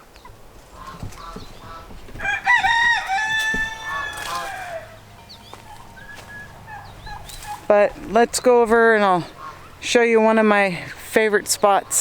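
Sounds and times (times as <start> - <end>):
rooster crowing: 1.7 - 5.1.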